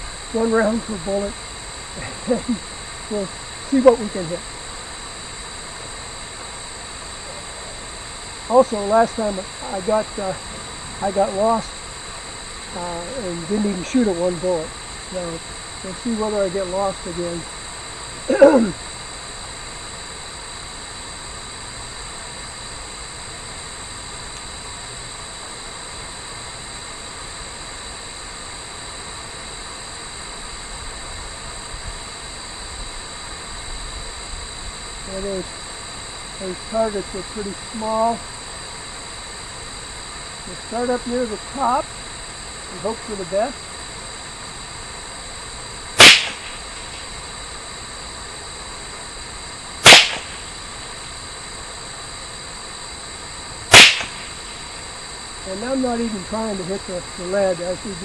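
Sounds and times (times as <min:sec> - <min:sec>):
even hiss: 0:00.0 - 0:58.0
rifle shots: 0:46.0 - 0:47.2, 0:49.8 - 0:50.6, 0:53.7 - 0:54.7.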